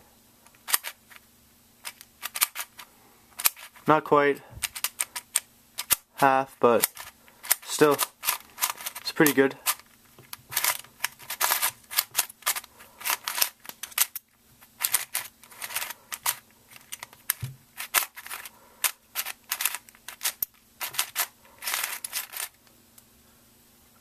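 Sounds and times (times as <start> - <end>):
plastic puzzle cube clicking: 1.9 - 2.8, 4.6 - 6.0, 10.5 - 14.2, 14.8 - 22.6.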